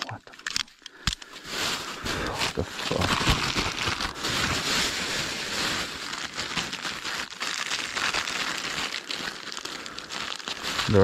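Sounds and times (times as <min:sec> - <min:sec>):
bag rustling and crinkling: 0:01.2 - 0:11.0.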